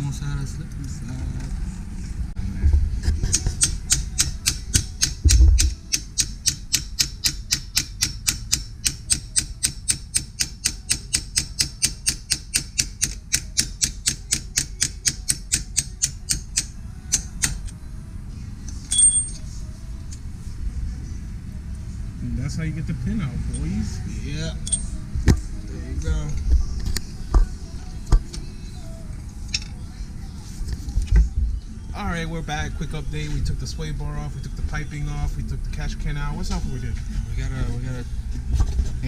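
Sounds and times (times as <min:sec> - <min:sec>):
hammer tapping on steel: 0:03.3 - 0:17.7
ringing metallic clink: 0:18.8 - 0:19.5, 0:24.6 - 0:25.0.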